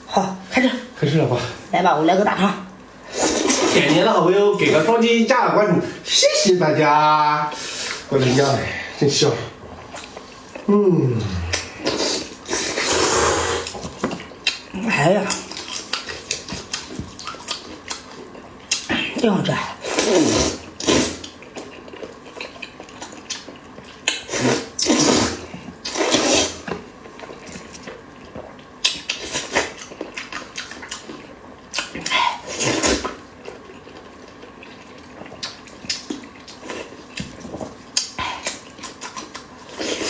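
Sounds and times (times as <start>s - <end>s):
noodles slurped: 11.3s - 14.1s, 19.8s - 21.4s, 24.2s - 26.8s, 31.8s - 33.2s
chewing and lip smacking: 13.6s - 18.9s, 20.6s - 24.3s, 26.6s - 32.2s, 33.0s - 40.0s.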